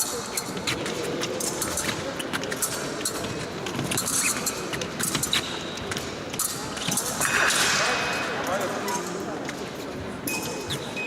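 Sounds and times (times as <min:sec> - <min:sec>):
murmur of large hall: 0:00.0 - 0:11.0.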